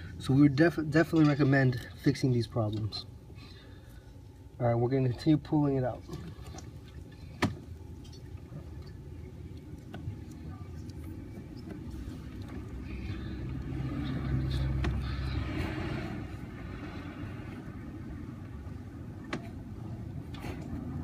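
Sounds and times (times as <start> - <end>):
road vehicle passing by: 11.8 - 21.0.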